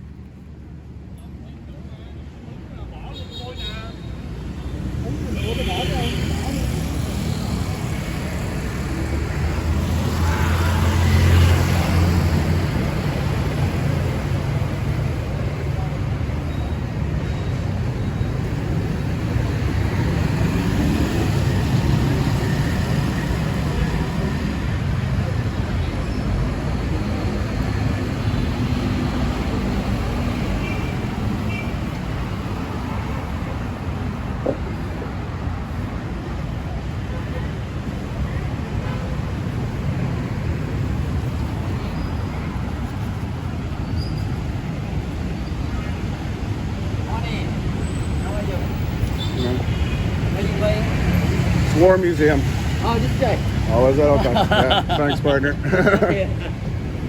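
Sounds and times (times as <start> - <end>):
city street traffic: 0.0 - 57.0
motorbike and car engines passing: 5.0 - 16.3, 49.4 - 57.0.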